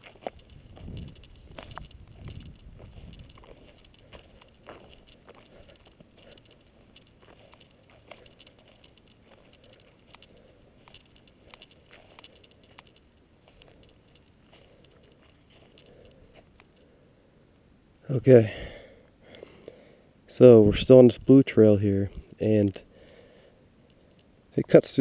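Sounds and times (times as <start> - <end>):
footsteps on forest trail: 0.0 - 16.5.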